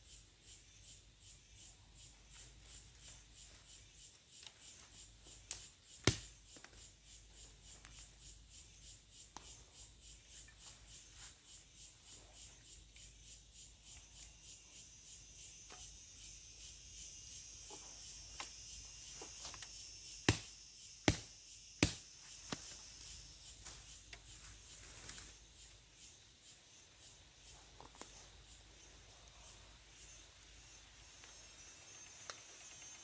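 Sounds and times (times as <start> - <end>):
insects chirping: 0.0 - 33.0
sharp snaps: 5.5 - 6.8, 20.2 - 22.8.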